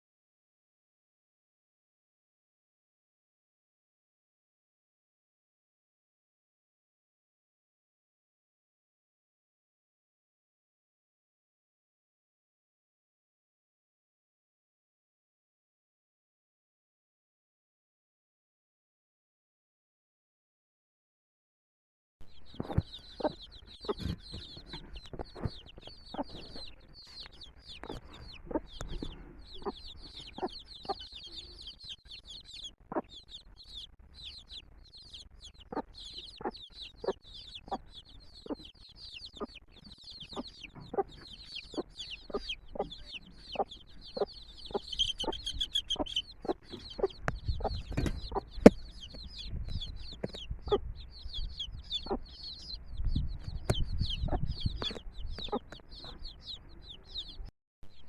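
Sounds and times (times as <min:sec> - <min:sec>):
hen clucking: 0:22.3 - 0:57.5
chicks peeping: 0:22.3 - 0:58.0.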